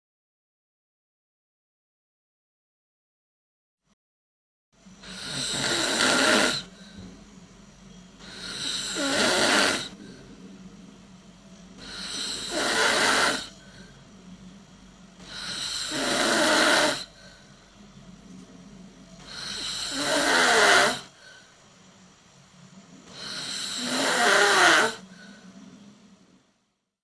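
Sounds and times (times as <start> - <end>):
steady low hum: 4.8 - 26.9
person snoring: 5.0 - 6.8, 8.2 - 10.2, 11.8 - 14.0, 15.2 - 17.5, 19.2 - 21.5, 23.1 - 25.6.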